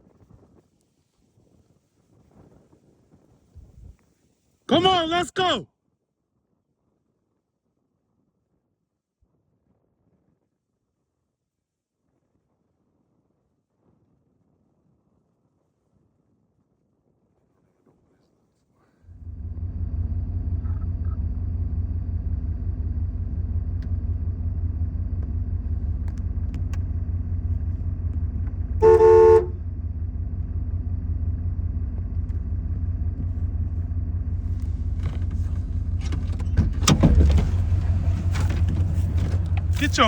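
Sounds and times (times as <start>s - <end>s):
vehicle engine running: 19.1s - 40.0s
car horn honk: 28.8s - 29.6s.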